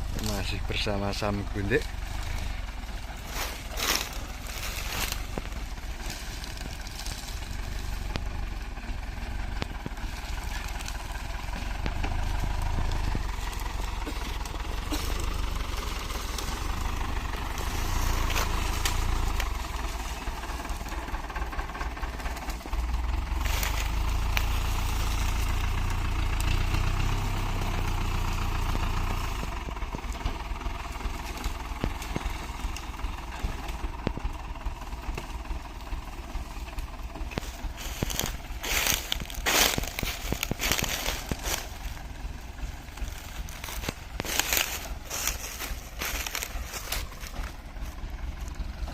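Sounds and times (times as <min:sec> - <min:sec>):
off-road vehicle engine running: 0:00.0 - 0:48.9.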